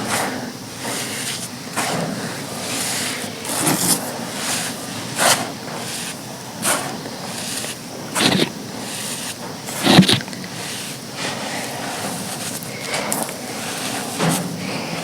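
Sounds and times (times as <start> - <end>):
gritty rustle of sand: 0.8 - 15.0
sand chunks crunching: 8.2 - 8.6, 9.7 - 10.7.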